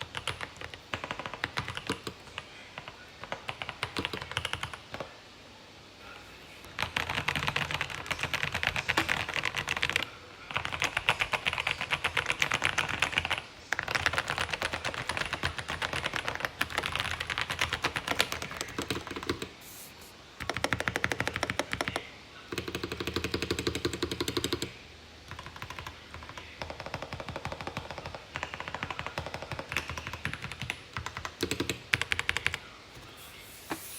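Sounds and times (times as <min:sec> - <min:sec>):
mechanical keyboard typing: 0:00.0 - 0:05.0, 0:06.7 - 0:24.7, 0:25.3 - 0:33.9.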